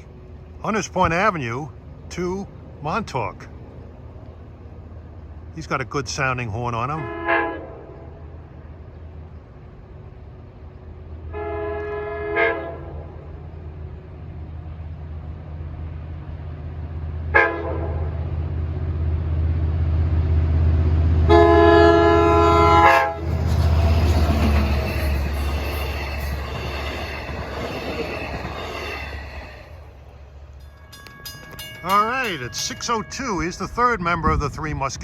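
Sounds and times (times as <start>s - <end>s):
train rumble: 0.0s - 35.0s
train multi-chime air horn: 21.3s - 29.8s, 30.6s - 33.8s.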